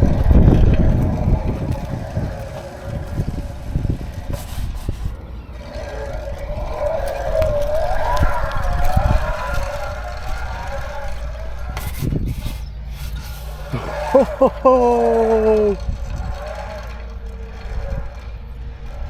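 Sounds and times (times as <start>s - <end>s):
distant siren rising and falling: 0.0s - 12.2s
wind rumbling on microphone: 0.0s - 19.0s.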